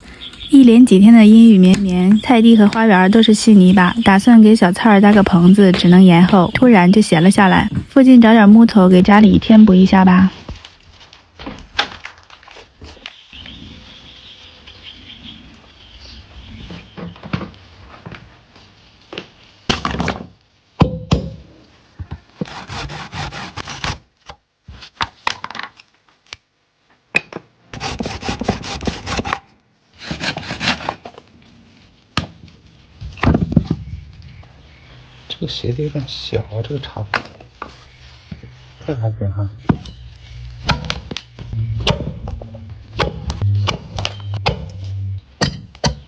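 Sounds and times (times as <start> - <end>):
wooden knocks and thunks: 33.0 - 33.9.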